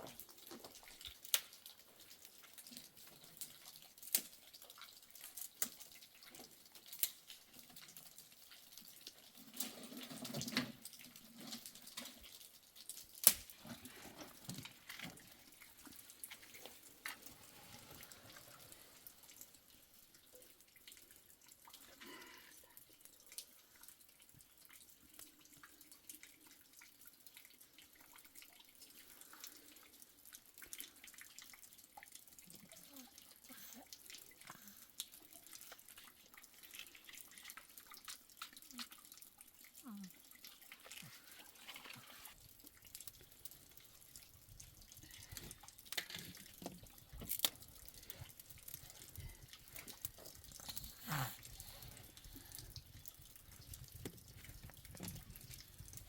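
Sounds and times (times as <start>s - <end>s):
water dripping and trickling: 0.0s - 56.0s
small clicks and light knocks: 53.5s - 56.0s.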